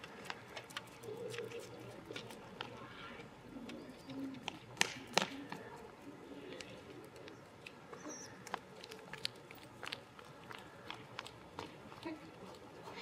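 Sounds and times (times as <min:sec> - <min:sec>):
bird feet tapping: 0:03.6 - 0:05.8.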